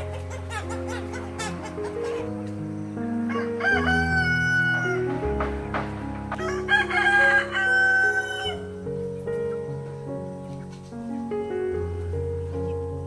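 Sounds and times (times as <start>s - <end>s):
background music: 0.0s - 13.0s
rooster crowing: 3.3s - 5.7s, 6.3s - 8.9s.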